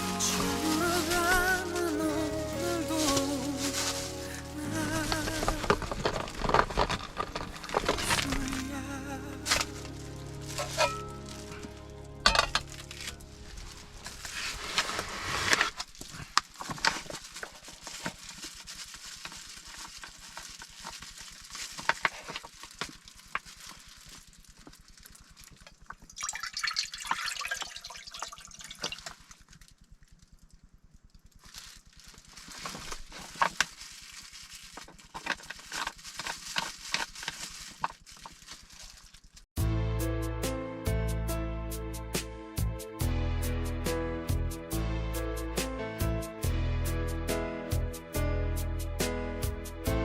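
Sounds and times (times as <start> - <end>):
food sizzling and crackling: 0.0 - 8.3.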